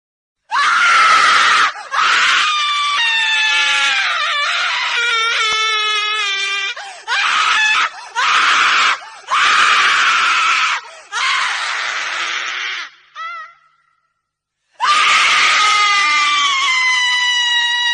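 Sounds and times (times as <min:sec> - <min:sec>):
woman screaming: 0:00.5 - 0:13.9, 0:14.8 - 0:17.9
breaths between screams: 0:06.8 - 0:07.1, 0:10.8 - 0:11.2.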